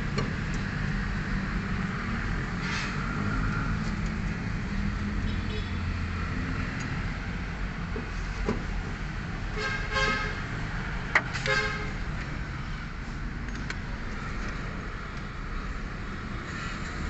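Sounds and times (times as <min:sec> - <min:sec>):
vehicle horn toots: 0:09.6 - 0:10.4, 0:11.5 - 0:11.9.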